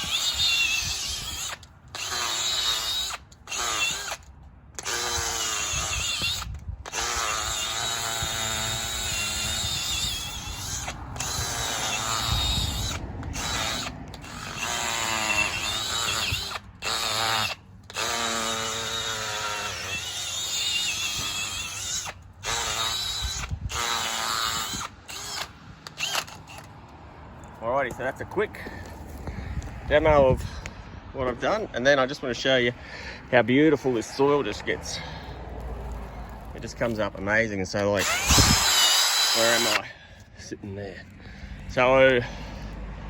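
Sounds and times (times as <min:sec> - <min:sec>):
cordless drill turning auger: 0:00.0 - 0:26.8, 0:38.0 - 0:39.9.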